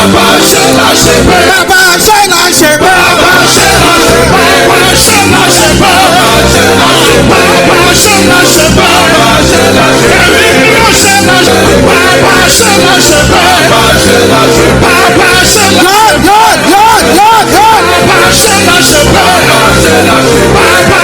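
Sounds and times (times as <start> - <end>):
church praise band: 0.0 - 21.0
congregation singing: 0.0 - 21.0.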